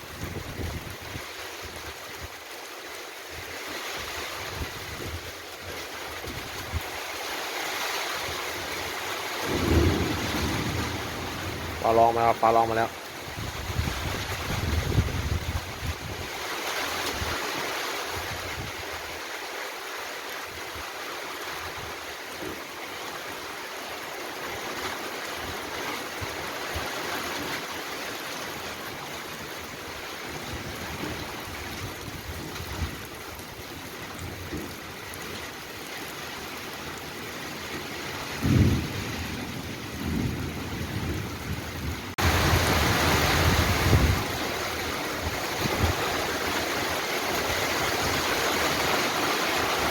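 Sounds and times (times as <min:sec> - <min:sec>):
heavy rain pouring: 0:00.0 - 0:49.9
thunder rumbles: 0:09.4 - 0:16.0, 0:38.3 - 0:46.5.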